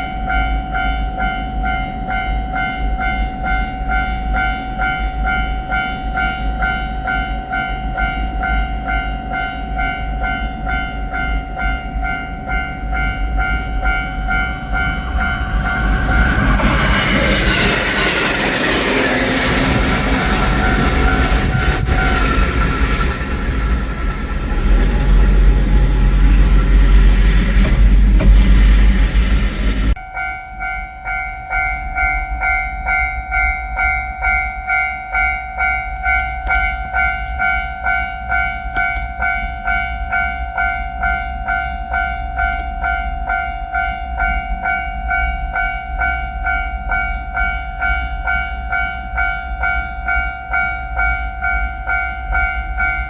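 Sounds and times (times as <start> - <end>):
level crossing bell ringing: 0.0 - 16.6
electric train rumbling past: 0.0 - 53.0.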